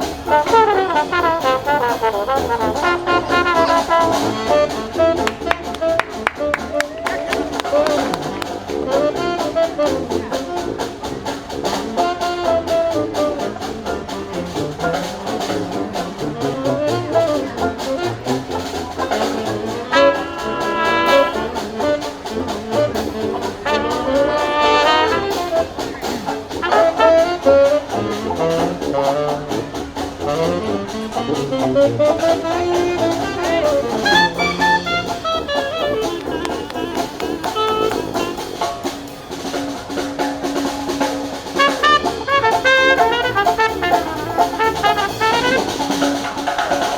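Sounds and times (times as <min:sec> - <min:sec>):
horns playing melody: 0:00.0 - 0:46.9
live jazz band: 0:00.0 - 0:46.9.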